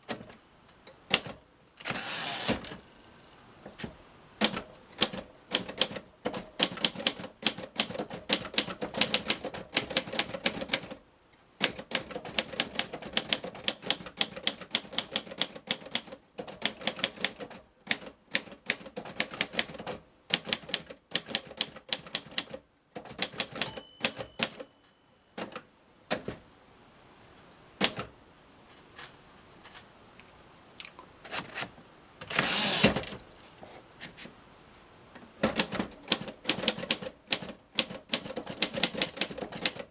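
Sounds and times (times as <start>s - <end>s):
typewriter carriage return: 1.1s - 2.8s, 3.8s - 11.0s, 11.6s - 24.7s, 31.4s - 33.2s, 35.4s - 39.9s
typewriter key strikes: 11.6s - 24.7s
typewriter bell ring: 23.5s - 25.2s.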